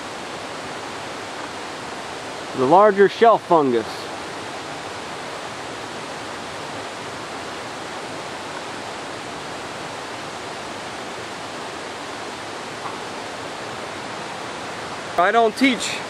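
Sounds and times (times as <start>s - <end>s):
running water rushing: 0.0s - 16.0s.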